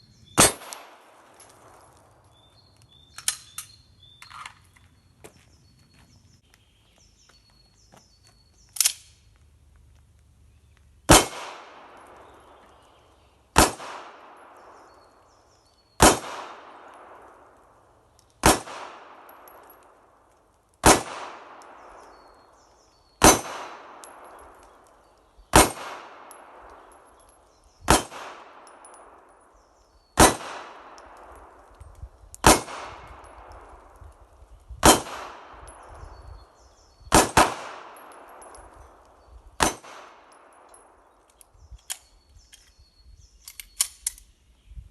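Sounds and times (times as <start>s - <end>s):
pistol shots: 0.4s - 1.8s, 11.1s - 12.6s, 13.5s - 15.0s, 16.0s - 17.5s, 18.4s - 19.8s, 20.8s - 22.2s, 23.2s - 24.7s, 25.5s - 27.0s, 27.9s - 29.2s, 30.2s - 31.6s, 32.4s - 33.9s, 34.8s - 36.0s, 37.1s - 38.7s, 39.6s - 40.9s.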